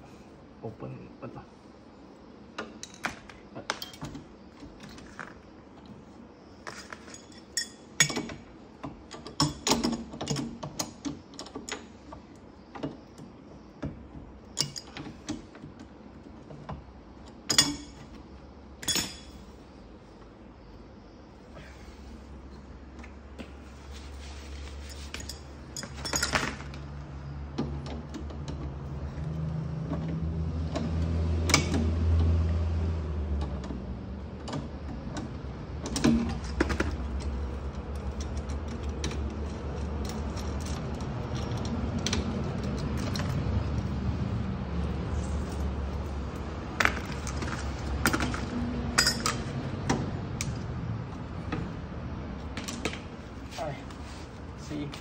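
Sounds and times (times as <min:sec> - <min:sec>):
steady low hum: 0:00.0 - 0:55.0
metal tools clinking on fittings: 0:03.7 - 0:04.1, 0:06.7 - 0:08.4, 0:14.6 - 0:15.1, 0:17.5 - 0:18.0, 0:18.8 - 0:19.4, 0:24.8 - 0:26.8, 0:45.2 - 0:49.5.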